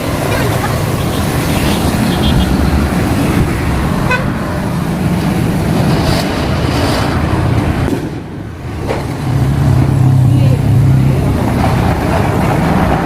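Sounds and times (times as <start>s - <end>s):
street traffic rumble: 0.0s - 13.0s
vehicle horn toot: 0.2s - 2.7s, 4.0s - 4.4s.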